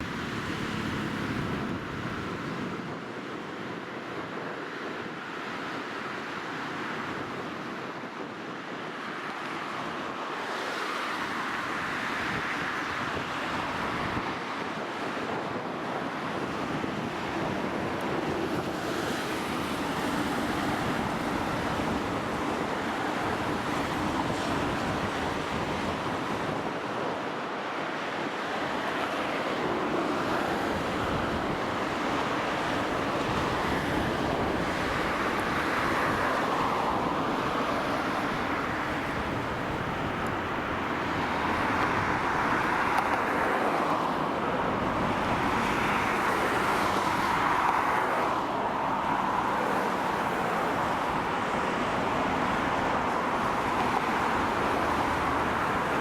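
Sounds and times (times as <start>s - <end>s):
flowing river water: 0.0s - 3.7s, 8.8s - 56.0s
wind buffeting microphone: 0.0s - 10.4s, 11.2s - 56.0s.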